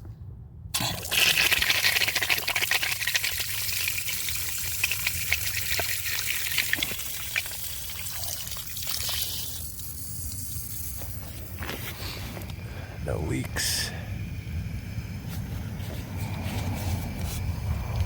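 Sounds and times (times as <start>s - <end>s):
water rushing through pipes: 0.7s - 11.2s.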